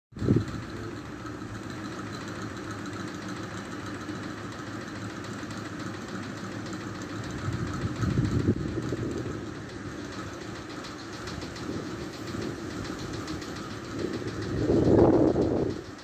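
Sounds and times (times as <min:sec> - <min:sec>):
low rumble in the sky: 0:00.1 - 0:16.0
hiss: 0:09.4 - 0:16.0.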